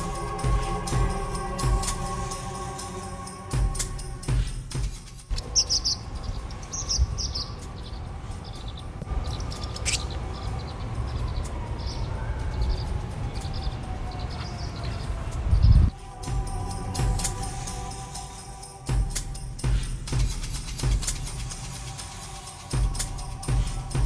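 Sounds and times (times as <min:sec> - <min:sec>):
small songbirds chirping: 0:00.0 - 0:19.0
steady low rumble: 0:00.0 - 0:24.0.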